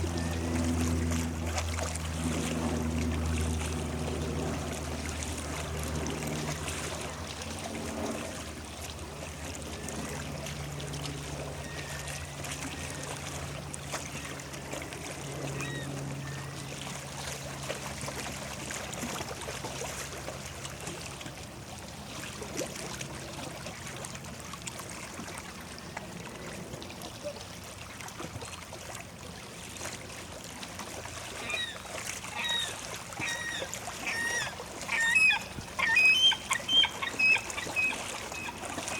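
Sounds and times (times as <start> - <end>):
low engine drone: 0.0 - 24.7
water lapping at shore: 0.0 - 38.9.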